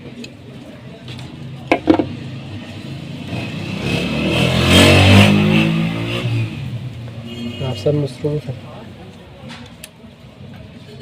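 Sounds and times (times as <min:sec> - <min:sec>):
motor vehicle engine passing: 0:02.1 - 0:07.0.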